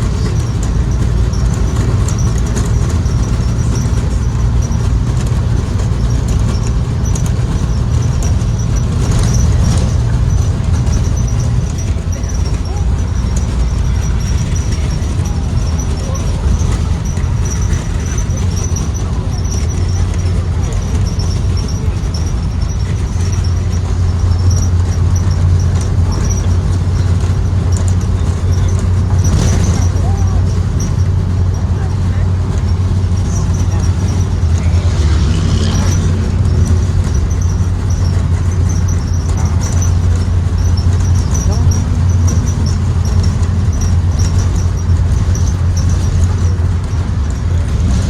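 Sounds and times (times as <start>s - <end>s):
bus engine droning: 0.0s - 48.0s
high-pitched squeaks and rattles: 0.0s - 48.0s.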